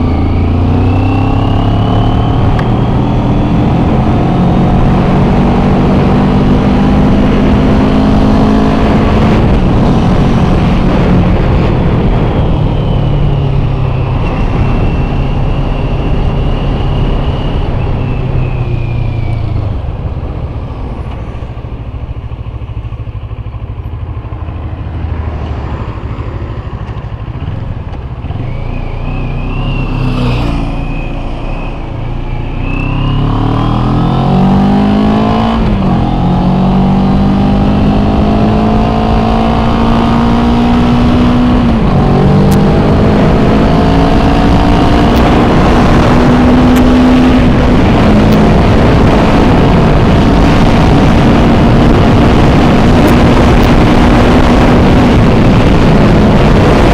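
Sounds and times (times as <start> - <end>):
motorcycle engine accelerating: 0.0 - 56.9
wind noise on microphone: 0.0 - 56.9.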